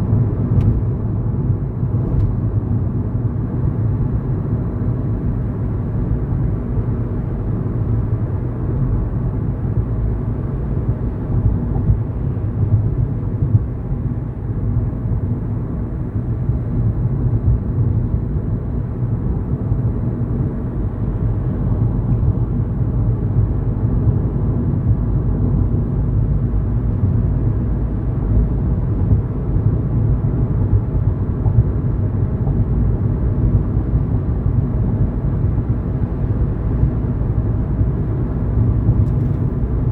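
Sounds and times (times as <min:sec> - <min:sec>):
car driving rumble: 0:00.0 - 0:39.9.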